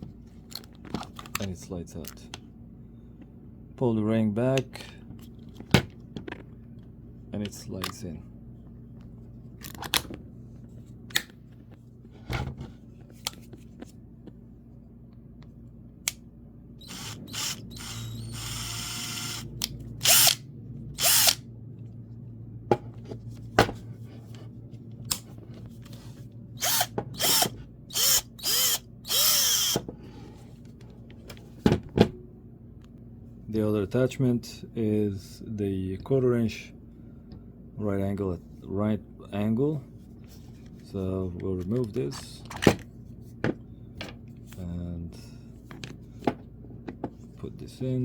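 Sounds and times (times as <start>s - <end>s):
cordless drill running: 16.8s - 20.4s, 21.0s - 21.4s, 26.6s - 29.8s.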